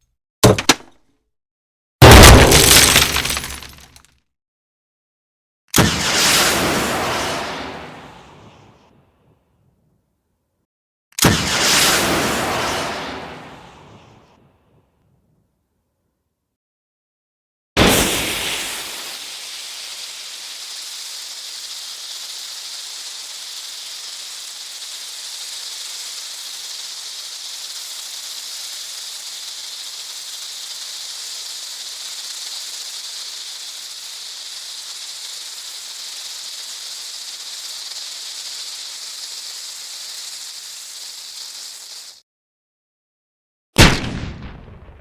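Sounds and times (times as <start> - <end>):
smoke grenade hissing: 0.4 - 0.9, 2.0 - 4.0, 17.8 - 42.2.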